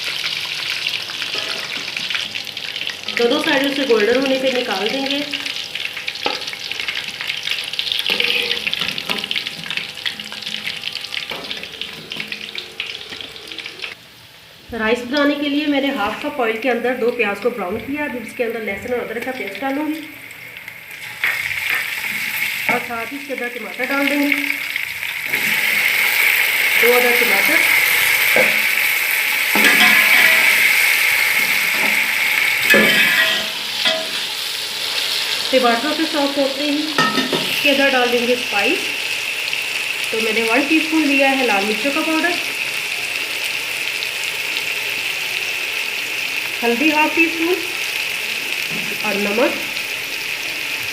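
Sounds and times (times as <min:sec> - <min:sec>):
chicken frying in hot oil: 0:00.0 - 0:50.9
spoon knocking against pot: 0:29.6 - 0:30.6, 0:37.0 - 0:37.6.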